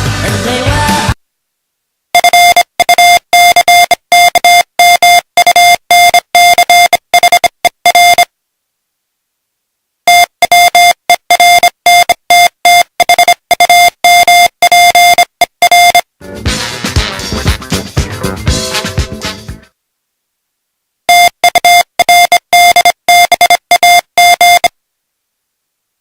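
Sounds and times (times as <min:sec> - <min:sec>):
morse code beeps: 0:02.2 - 0:08.3, 0:10.1 - 0:16.1, 0:21.1 - 0:24.8.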